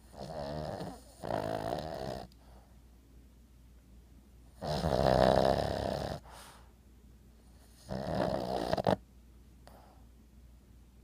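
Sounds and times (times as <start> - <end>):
dog snoring: 0.0 - 2.4, 4.6 - 6.6, 7.5 - 9.0.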